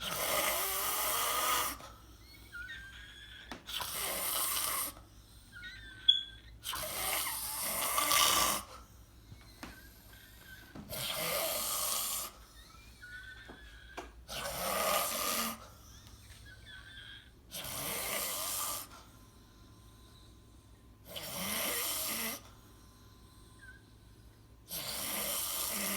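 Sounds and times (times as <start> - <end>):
person snoring: 0.0 - 1.8, 6.7 - 8.8, 14.3 - 15.7, 24.7 - 25.9.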